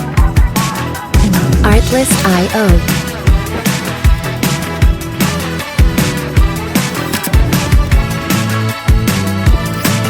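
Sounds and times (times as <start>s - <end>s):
background music with steady beat: 0.0s - 10.0s
heavy kick drum: 1.2s - 3.5s.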